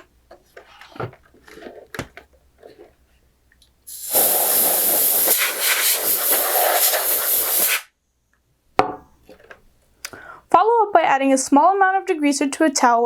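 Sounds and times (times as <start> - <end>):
compressed air hissing: 3.9 - 7.9.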